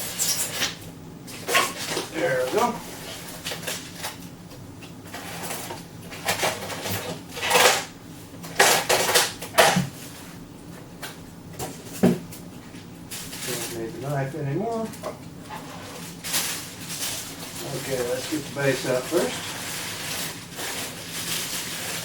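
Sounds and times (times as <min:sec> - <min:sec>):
packaging scraping and rustling: 0:01.4 - 0:04.2, 0:15.5 - 0:22.0.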